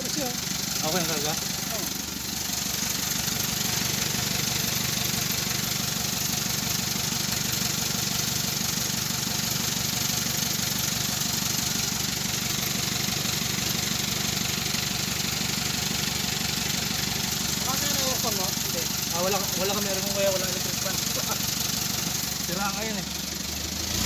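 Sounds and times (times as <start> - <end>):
car engine idling: 0.0 - 24.0.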